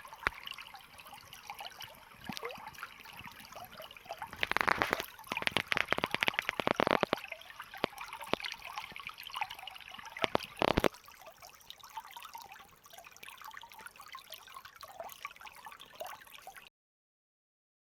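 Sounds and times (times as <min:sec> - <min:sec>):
water trickling and splashing: 0:00.0 - 0:16.7
sharp clicks: 0:04.5 - 0:07.1.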